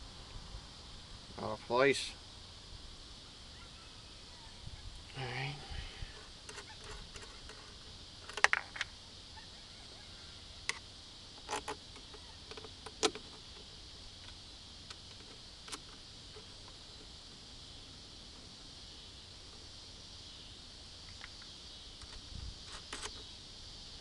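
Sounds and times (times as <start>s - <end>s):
steady hiss: 0.0s - 24.0s.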